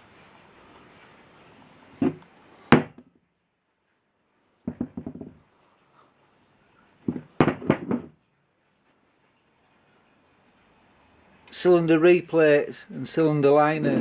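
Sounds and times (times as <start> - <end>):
hard objects knocking: 2.0 - 3.0, 4.7 - 5.4, 7.1 - 8.2.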